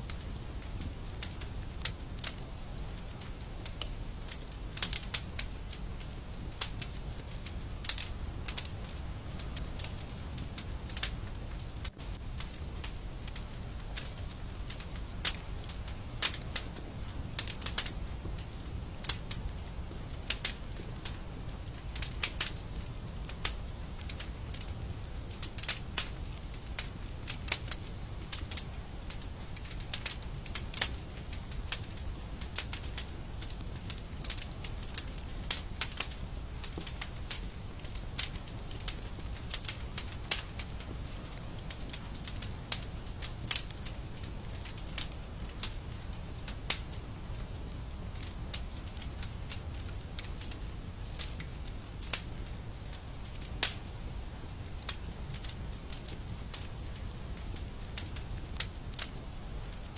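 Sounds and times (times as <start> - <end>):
fireplace fire crackling: 0.0 - 59.9.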